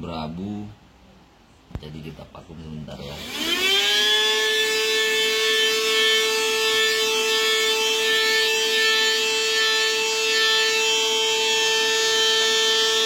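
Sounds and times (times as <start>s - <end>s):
vacuum cleaner motor whine: 2.9s - 13.0s.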